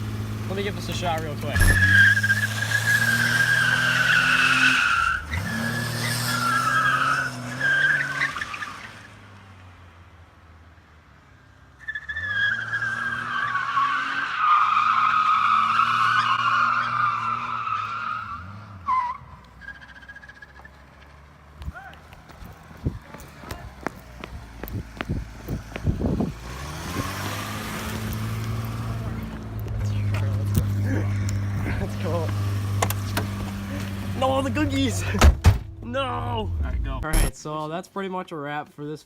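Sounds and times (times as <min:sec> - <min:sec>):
tires squealing: 0:00.5 - 0:09.4, 0:11.8 - 0:23.9, 0:24.5 - 0:35.2
car engine revving hard: 0:25.6 - 0:29.3.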